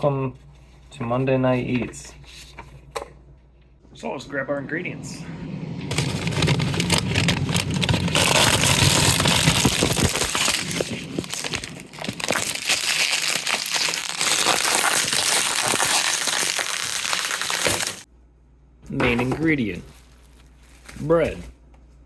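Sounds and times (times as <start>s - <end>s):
packaging rustling and crinkling: 5.9s - 18.1s, 19.8s - 21.6s.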